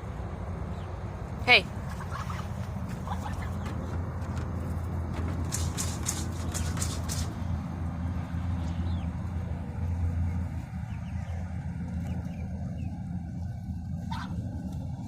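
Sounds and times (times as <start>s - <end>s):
low engine-like rumble: 0.0s - 15.0s
sharp rattling clicks: 3.6s - 7.4s.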